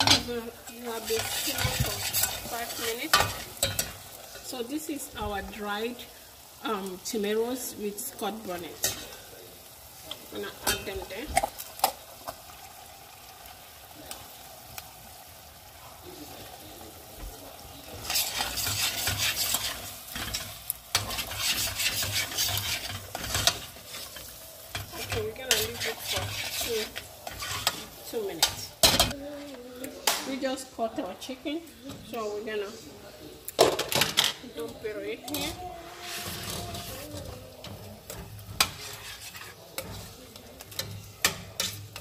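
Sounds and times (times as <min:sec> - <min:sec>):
spoon scraping pot: 0:00.0 - 0:04.0, 0:18.0 - 0:29.1, 0:34.2 - 0:42.0
sauce sizzling in a pot: 0:00.0 - 0:42.0.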